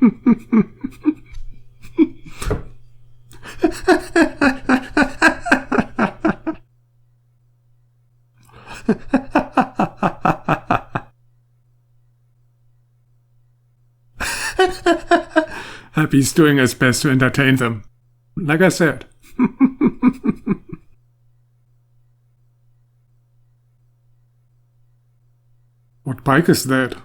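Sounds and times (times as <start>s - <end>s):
people laughing: 0.0s - 6.6s, 8.6s - 11.1s, 14.2s - 15.8s, 19.2s - 20.9s.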